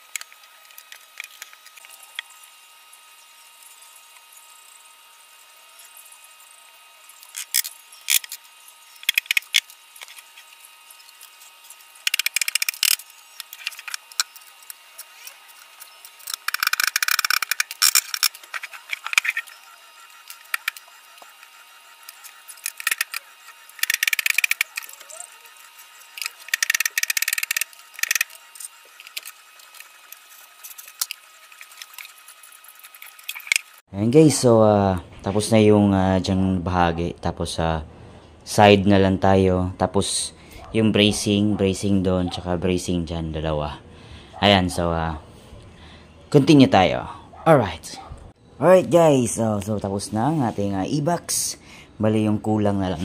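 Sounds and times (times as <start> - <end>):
tools clicking and rattling: 7.3 - 33.8.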